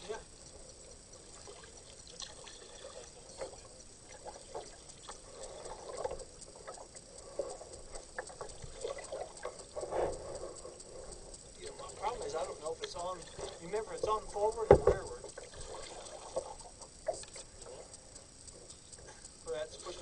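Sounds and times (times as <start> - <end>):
water trickling off paddle: 0.0 - 20.0
paddle splashing in water: 14.7 - 16.6.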